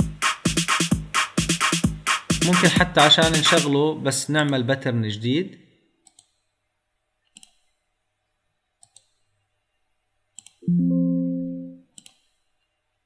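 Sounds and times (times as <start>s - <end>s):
computer mouse clicking: 6.0s - 6.4s, 7.3s - 7.7s, 8.8s - 9.2s, 10.4s - 10.6s
pitched electronic tone: 10.6s - 11.8s.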